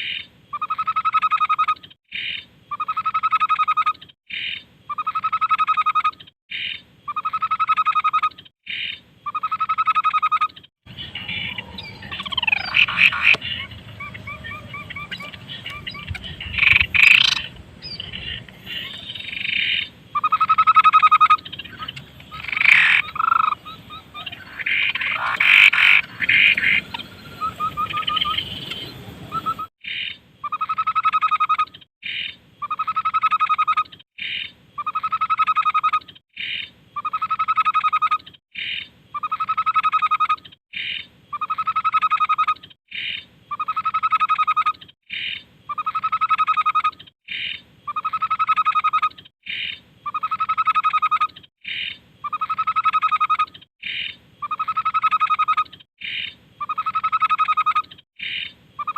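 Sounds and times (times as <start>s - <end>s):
trilled bird call: 2.7s - 40.4s
bird calls and chatter: 10.3s - 30.8s.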